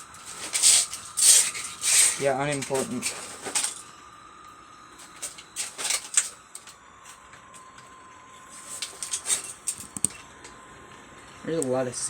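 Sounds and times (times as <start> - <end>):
model train motor whine: 0.0 - 12.0.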